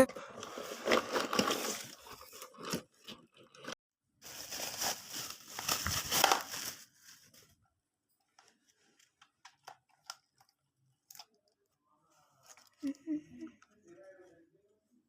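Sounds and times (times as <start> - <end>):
packaging crinkling and rustling: 0.4 - 7.6.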